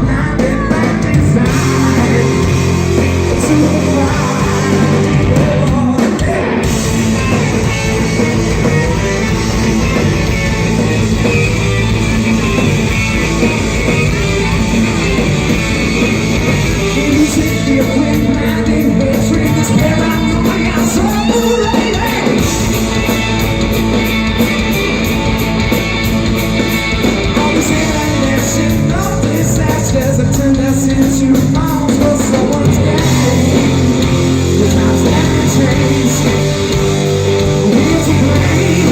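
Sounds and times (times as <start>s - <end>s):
person singing: 0.0s - 6.8s, 16.8s - 23.0s, 27.2s - 38.9s
live rock band playing: 0.0s - 38.9s.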